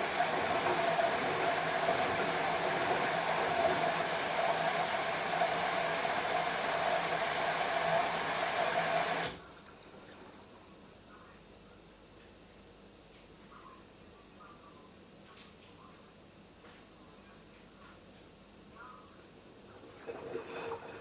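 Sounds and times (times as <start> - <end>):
washing machine running: 0.0 - 10.6, 18.7 - 21.0.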